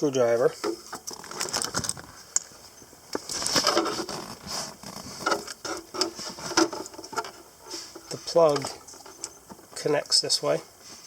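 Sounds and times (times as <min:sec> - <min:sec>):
rustling scrape: 0:00.6 - 0:09.6, 0:10.4 - 0:11.0.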